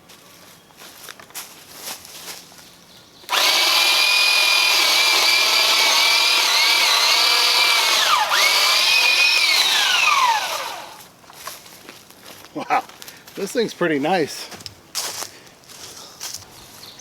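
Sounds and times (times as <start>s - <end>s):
electric pole saw whining: 3.3s - 11.1s.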